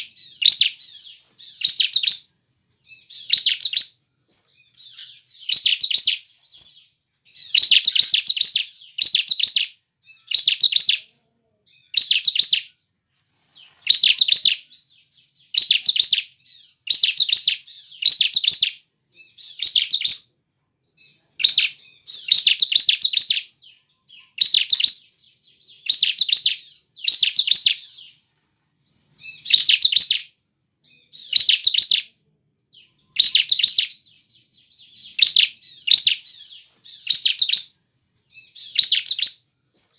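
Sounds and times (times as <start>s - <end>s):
bird singing buzzy chattering notes: 0.0s - 11.0s, 13.8s - 20.2s, 32.7s - 37.7s, 38.3s - 39.4s.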